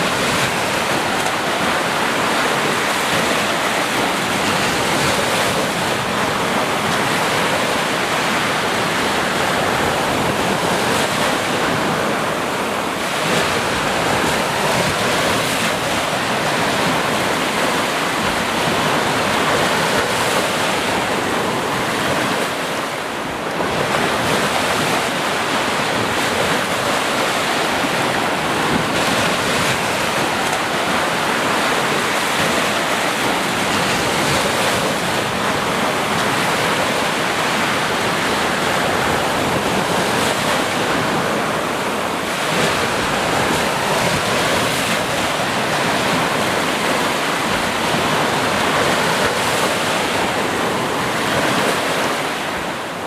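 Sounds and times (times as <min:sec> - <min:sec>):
waves washing onto shore: 0:00.0 - 0:53.0.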